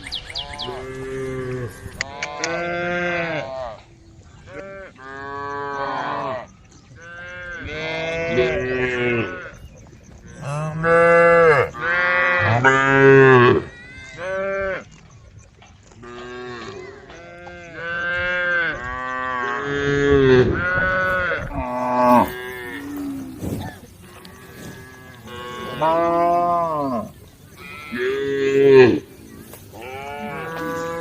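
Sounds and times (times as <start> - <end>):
cows mooing: 10.3 - 13.7, 16.0 - 31.0.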